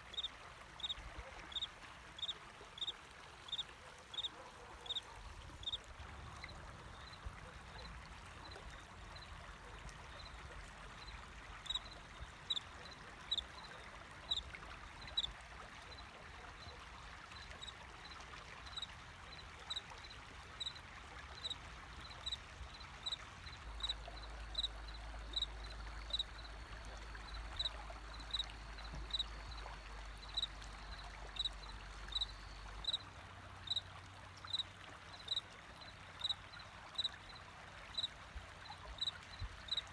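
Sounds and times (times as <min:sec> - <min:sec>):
water flowing and trickling: 0:00.0 - 0:39.9
cricket chirping: 0:00.2 - 0:02.9, 0:23.8 - 0:31.5, 0:32.1 - 0:33.0, 0:39.0 - 0:39.8.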